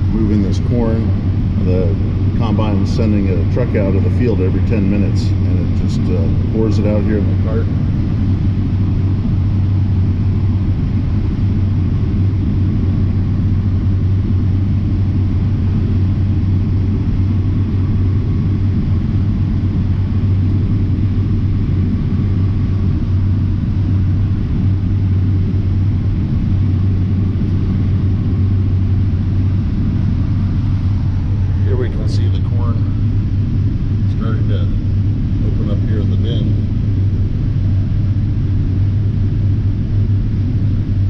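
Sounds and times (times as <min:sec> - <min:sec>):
combine harvester droning: 0:00.0 - 0:41.0.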